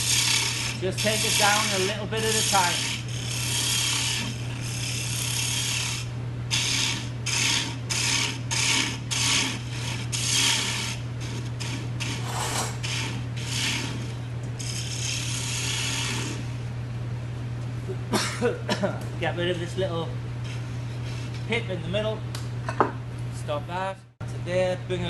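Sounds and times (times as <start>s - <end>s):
gouge cutting wood on lathe: 0.0s - 16.6s
steady low hum: 0.0s - 25.0s.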